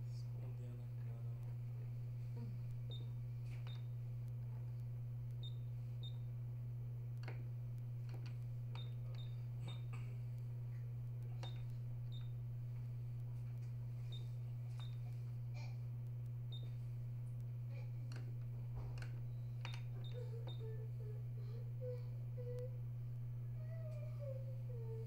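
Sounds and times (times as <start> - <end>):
low electrical hum: 0.0 - 25.0
control clicks: 7.1 - 10.5, 11.2 - 12.4, 16.0 - 20.7.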